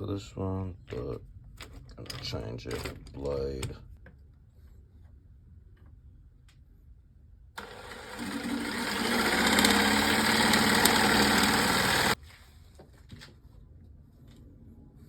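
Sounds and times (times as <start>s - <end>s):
electric jigsaw motor running: 7.6s - 12.2s.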